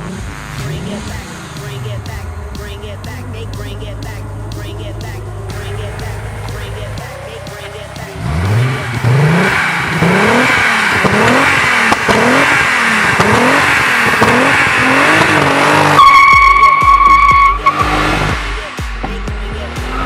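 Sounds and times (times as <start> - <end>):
car engine revving: 0.0 - 20.0
low rumble: 0.8 - 12.1
high-pitched squeal: 4.1 - 18.4.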